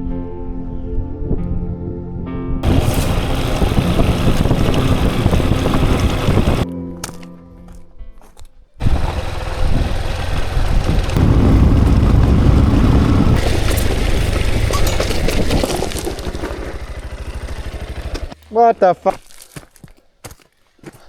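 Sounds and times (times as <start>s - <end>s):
motorcycle engine running: 2.6s - 6.6s, 8.8s - 18.5s.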